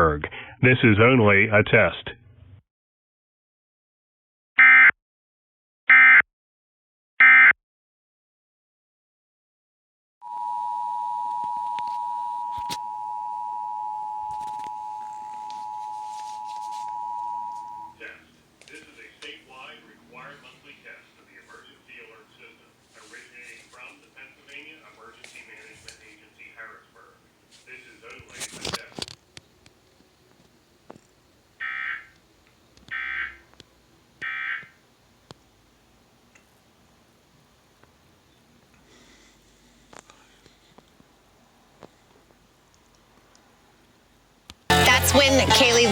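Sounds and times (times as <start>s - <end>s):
two-tone alert alarm: 10.2s - 18.0s.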